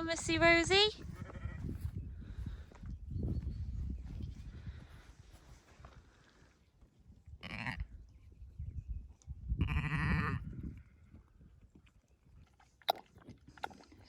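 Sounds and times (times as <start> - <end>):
sheep bleating: 9.6 - 10.4.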